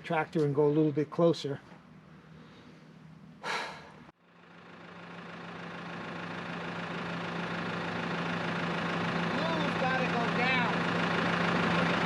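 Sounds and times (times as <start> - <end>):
tractor diesel engine idling: 4.1 - 12.0.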